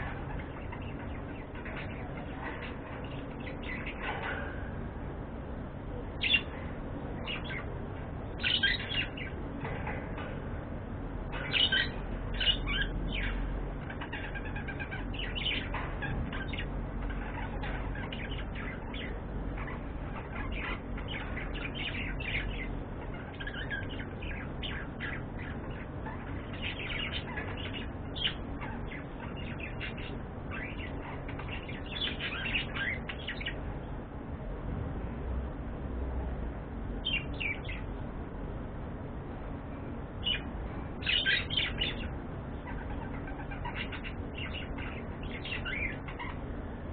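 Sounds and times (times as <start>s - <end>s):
budgerigars chirping: 0.0s - 4.5s, 8.4s - 9.8s, 11.3s - 33.6s, 37.0s - 37.9s, 40.2s - 46.5s.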